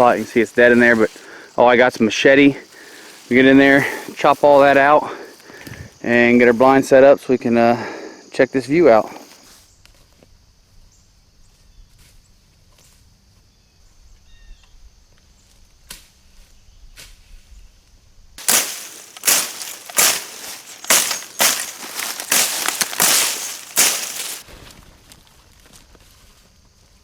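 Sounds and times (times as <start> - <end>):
machete swishing through dry brush: 18.4 - 24.4.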